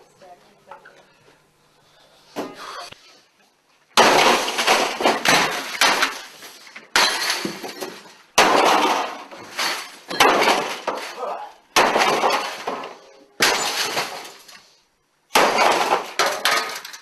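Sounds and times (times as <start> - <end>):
crashing and smashing: 4.0 - 14.7, 15.3 - 17.0.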